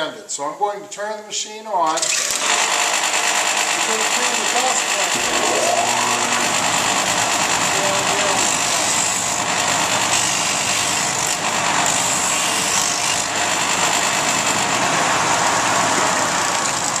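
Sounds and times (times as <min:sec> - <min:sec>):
disc sander whirring: 0:02.0 - 0:17.0
dust collector rushing air: 0:05.0 - 0:09.4.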